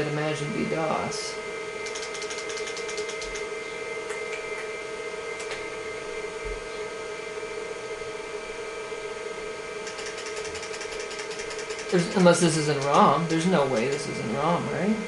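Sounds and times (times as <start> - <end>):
computer fan and drive hum: 0.0 - 15.0
hard drive clicks: 1.8 - 4.7, 5.3 - 5.7, 9.8 - 14.3.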